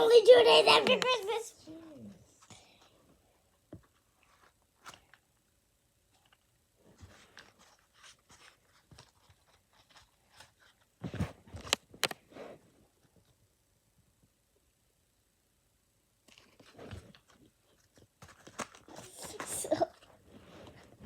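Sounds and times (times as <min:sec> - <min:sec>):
objects crinkling and clicking: 0:06.1 - 0:12.2, 0:16.2 - 0:21.0.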